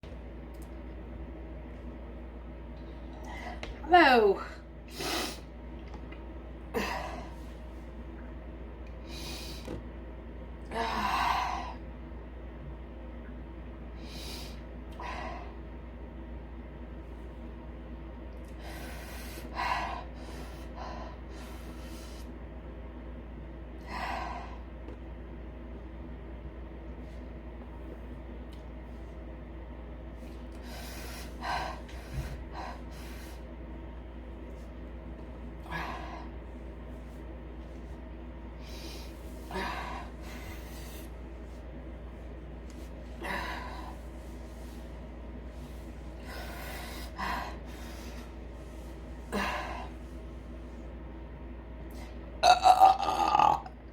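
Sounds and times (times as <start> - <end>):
steady low hum: 0.0 - 53.9.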